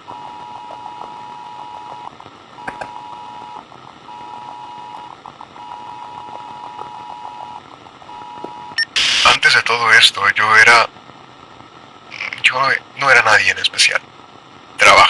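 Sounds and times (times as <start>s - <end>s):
radio static hiss: 8.8s - 11.0s, 12.0s - 14.1s, 14.7s - 15.0s.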